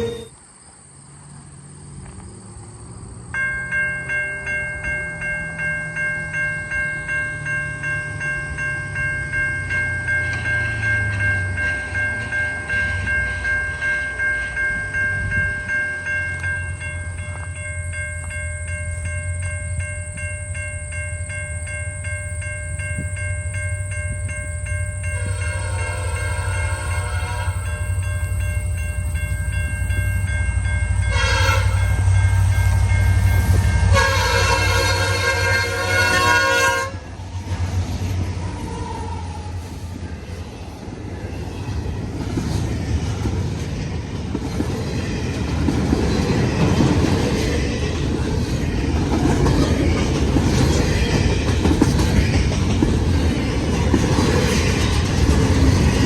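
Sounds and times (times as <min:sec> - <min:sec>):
railroad crossing bell ringing: 0:00.0 - 0:00.4, 0:03.1 - 0:38.0, 0:39.5 - 0:56.0
diesel locomotives rumbling: 0:00.0 - 0:56.0
locomotive air horn chord: 0:25.1 - 0:28.0, 0:31.0 - 0:32.8, 0:33.4 - 0:37.1.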